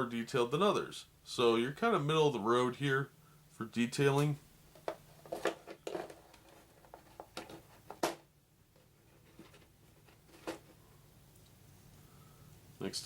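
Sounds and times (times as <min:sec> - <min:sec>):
plastic packaging rustling: 0:04.8 - 0:08.2.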